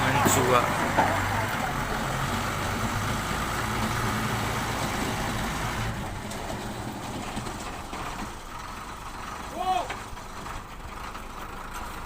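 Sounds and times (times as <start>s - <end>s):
heavy vehicle engine running: 0.0s - 12.0s.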